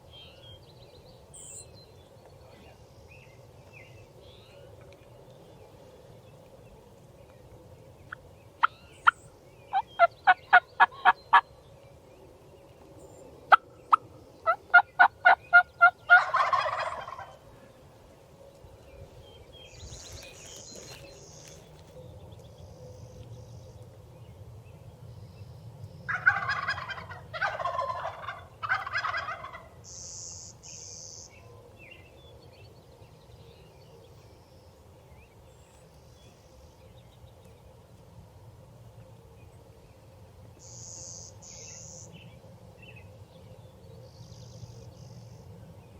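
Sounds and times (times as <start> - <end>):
turkey yelps: 14.5 - 17.3, 26.1 - 29.7
turkey gobbling: 14.5 - 17.4, 26.1 - 29.7
small birds chirping: 18.6 - 26.4.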